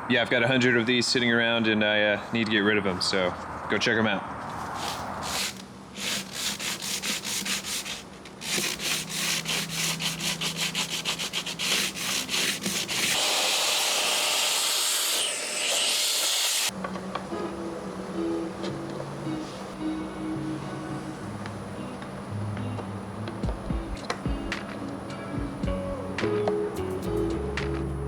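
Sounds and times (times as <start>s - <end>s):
sandpaper rubbing on wood: 4.5s - 13.8s
steady sanding hiss: 4.6s - 16.7s.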